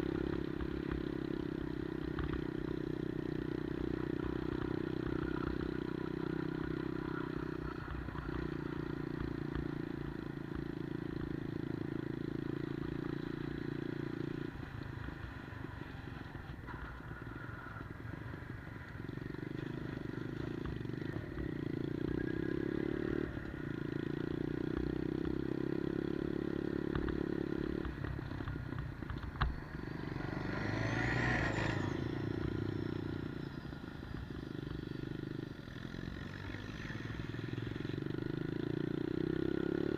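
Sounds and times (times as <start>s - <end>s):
minibike engine revving: 29.5s - 39.9s.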